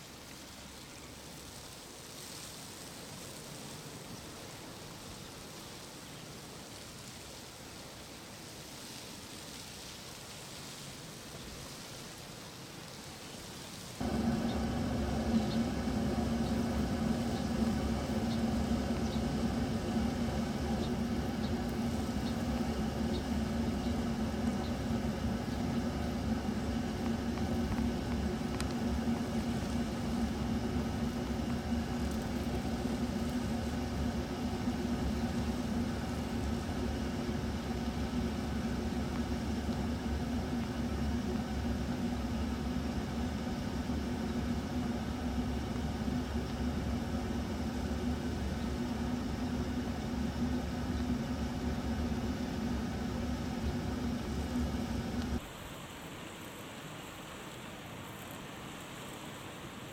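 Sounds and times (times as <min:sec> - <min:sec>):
idling motor humming: 0:14.0 - 0:36.8.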